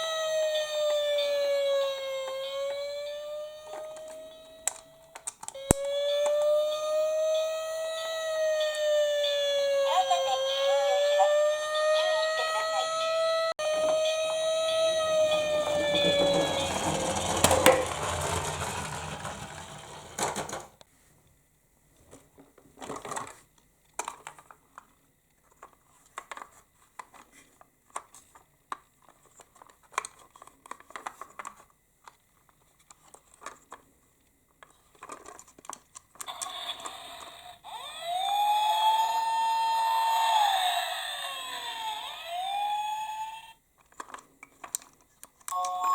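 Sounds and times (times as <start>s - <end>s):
toy siren: 0.0s - 19.5s, 36.2s - 43.6s.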